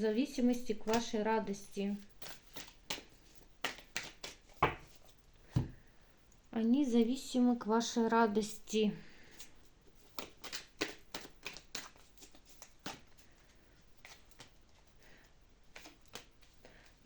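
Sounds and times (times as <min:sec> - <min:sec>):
cards clicking and rustling: 0:02.2 - 0:05.0, 0:10.0 - 0:13.4, 0:14.0 - 0:14.8, 0:15.7 - 0:17.0.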